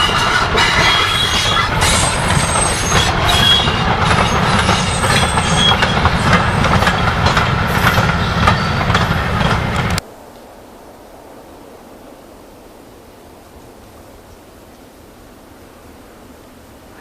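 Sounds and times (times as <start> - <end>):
wheel squeals: 0.0 - 9.4
train wheels clattering: 0.0 - 10.0
faint steady hiss: 10.0 - 17.0.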